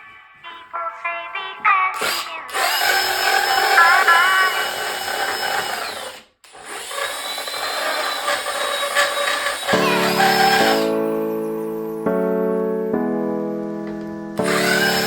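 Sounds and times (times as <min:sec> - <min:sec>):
power tool whining: 0:02.0 - 0:11.0, 0:14.4 - 0:15.0.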